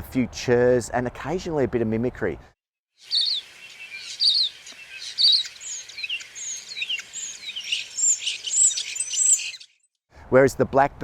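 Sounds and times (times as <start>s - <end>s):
starling singing: 3.0s - 9.8s.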